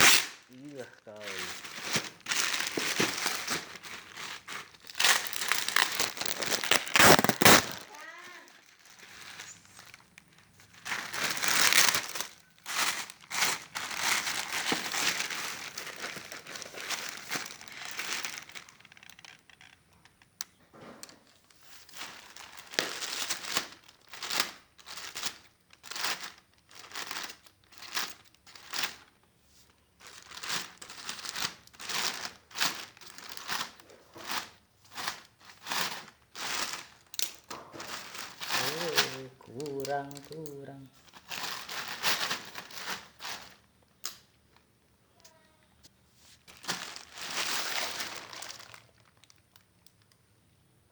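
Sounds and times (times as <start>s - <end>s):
plastic packaging rustling and tearing: 0.0s - 19.8s, 21.0s - 44.4s, 46.3s - 50.2s
plastic crinkles: 0.0s - 50.3s.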